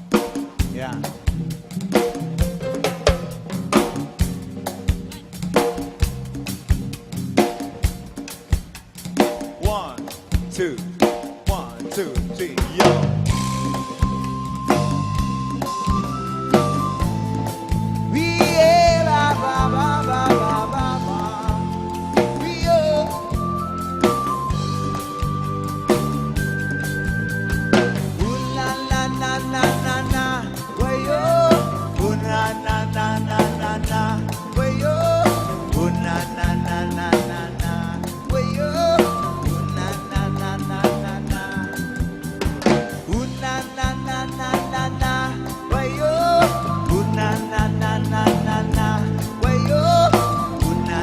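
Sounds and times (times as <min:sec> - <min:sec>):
live band playing: 0:00.0 - 0:51.0
drum kit hits: 0:00.2 - 0:14.2
sustained bass notes: 0:00.6 - 0:08.3, 0:11.5 - 0:51.0
sliding melodic lead line: 0:00.7 - 0:08.3, 0:12.7 - 0:51.0
person singing: 0:11.5 - 0:13.1, 0:18.0 - 0:23.4, 0:28.2 - 0:42.0, 0:43.0 - 0:51.0.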